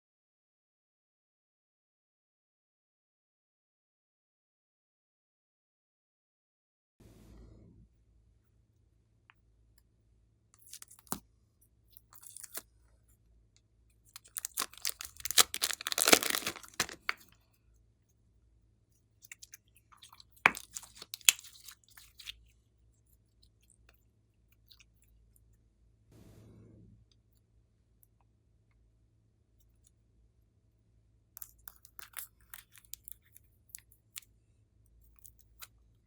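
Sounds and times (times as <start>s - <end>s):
slime crackling and popping: 14.2s - 17.2s, 20.4s - 22.3s.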